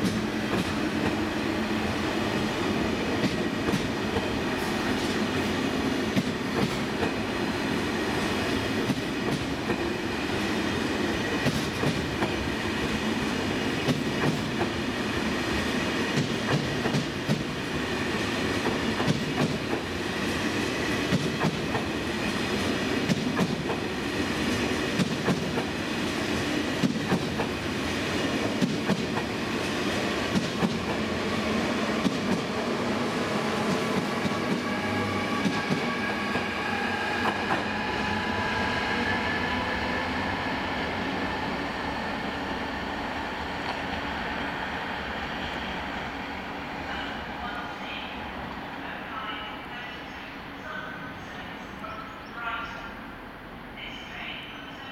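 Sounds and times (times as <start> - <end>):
train wheels clicking over rail joints: 0.0 - 1.2, 3.2 - 4.4, 6.1 - 7.2, 8.8 - 9.9, 11.3 - 12.4, 13.8 - 14.8, 16.1 - 17.6, 18.6 - 19.9, 21.1 - 22.0, 23.0 - 23.9, 24.5 - 25.8, 26.7 - 27.6, 28.4 - 29.3, 30.3 - 31.0
electric train rumbling past: 0.0 - 54.9.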